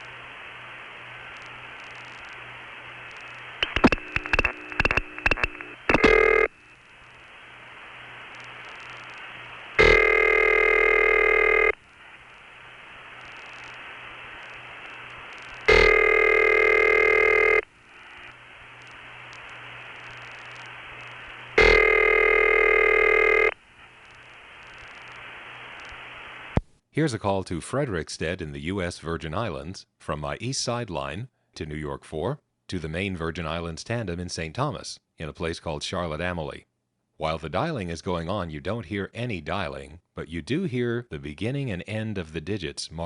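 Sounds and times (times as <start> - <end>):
telephone line hiss and hum: 0.0 - 26.6.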